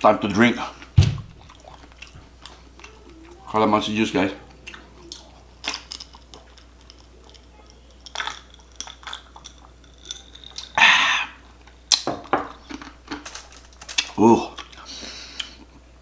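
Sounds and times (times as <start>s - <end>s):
sharp knocks: 1.0s - 1.4s.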